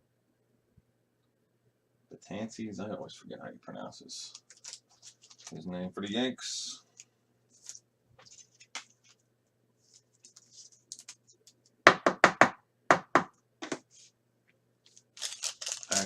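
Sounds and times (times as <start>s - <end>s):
rustling and scraping on table: 7.5s - 9.2s, 9.8s - 11.5s, 13.6s - 14.2s.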